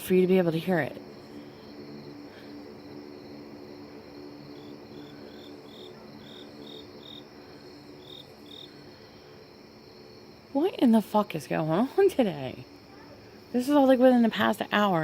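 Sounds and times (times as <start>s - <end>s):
low droning hum: 0.0s - 10.5s
insects trilling: 0.0s - 15.0s.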